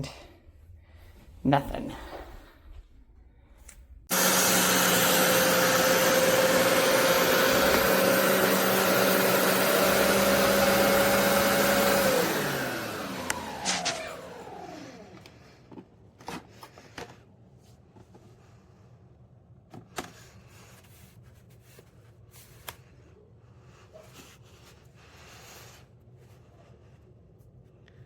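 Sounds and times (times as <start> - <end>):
carpet cleaner motor winding down: 4.1 - 15.8.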